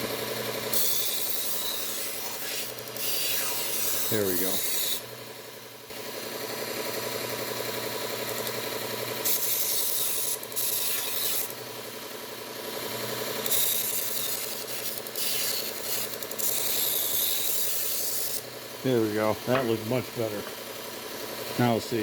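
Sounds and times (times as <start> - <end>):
belt grinder motor humming: 0.0 - 12.2, 12.8 - 21.6
knife blade grinding on belt: 0.7 - 5.0, 9.2 - 11.6, 13.4 - 18.4.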